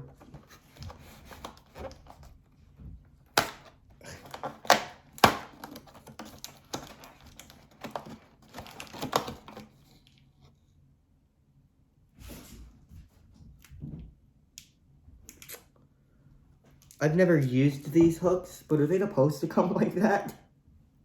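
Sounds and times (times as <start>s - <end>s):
plastic packaging clicking and crinkling: 0.0s - 2.4s, 3.3s - 10.2s
plastic packaging snapping: 3.3s - 9.7s.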